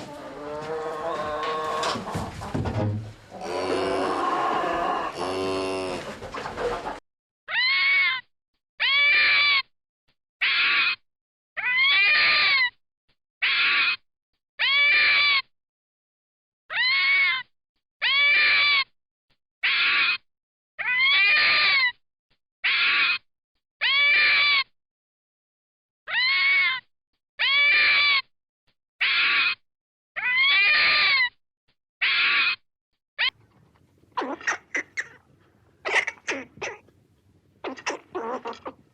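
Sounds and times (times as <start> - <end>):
cow mooing: 3.3 - 6.1
cat meowing: 8.8 - 9.6, 11.6 - 12.7, 16.7 - 18.8, 20.8 - 21.9, 23.8 - 24.7, 26.1 - 28.3, 30.2 - 31.3.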